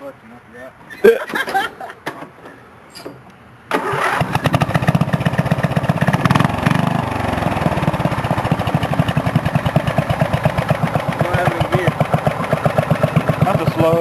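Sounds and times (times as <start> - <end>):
lawn mower engine idling: 3.7 - 14.0.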